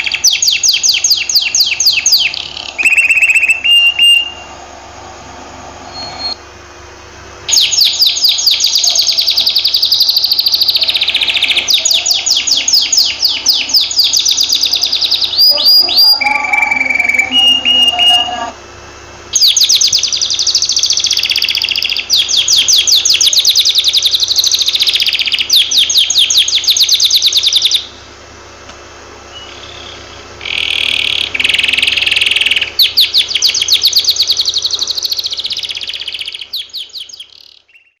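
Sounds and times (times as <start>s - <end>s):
canary trilling: 0.0s - 4.6s, 7.5s - 18.6s, 19.3s - 28.0s, 29.3s - 38.0s
harsh buzzy bird phrase: 0.0s - 4.6s, 7.5s - 18.8s.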